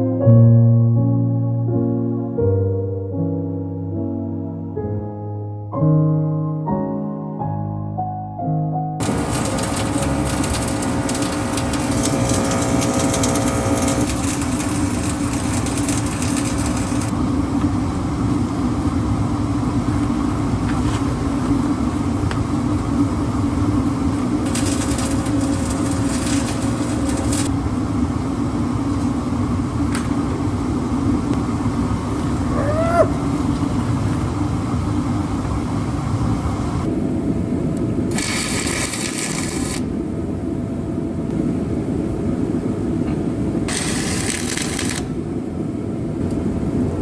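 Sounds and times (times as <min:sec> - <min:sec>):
welding arc crackling: 0:09.0 - 0:27.6, 0:38.1 - 0:39.9, 0:43.7 - 0:45.2
steady machine drone: 0:09.0 - 0:47.0.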